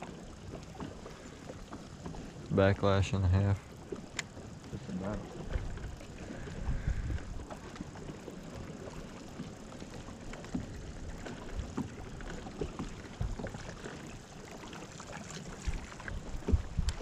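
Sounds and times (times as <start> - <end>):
water noise: 0.0 - 17.0
wind: 0.0 - 17.0
light knocks against boat: 3.8 - 8.0, 10.3 - 14.0, 15.6 - 17.0.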